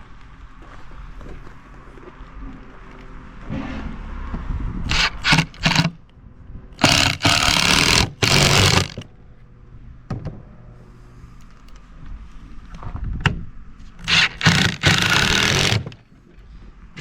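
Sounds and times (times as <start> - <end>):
impact driver hammering: 4.9 - 6.0, 6.8 - 9.0, 14.0 - 16.0.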